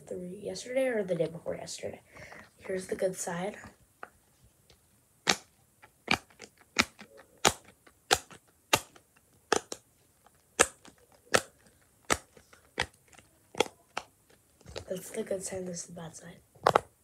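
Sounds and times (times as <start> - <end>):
fidget toy popping clicks: 5.3 - 9.8, 10.6 - 14.1.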